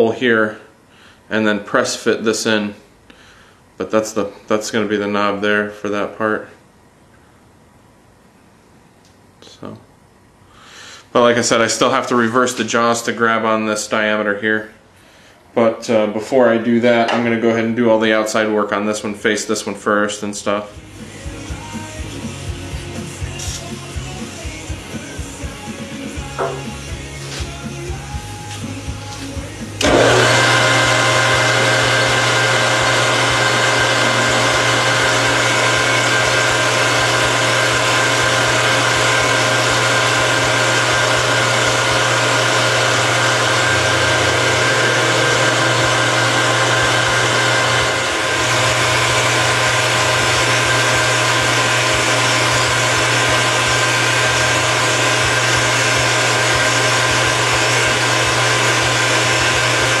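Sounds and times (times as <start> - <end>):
metal lathe whirring: 29.8 - 60.0.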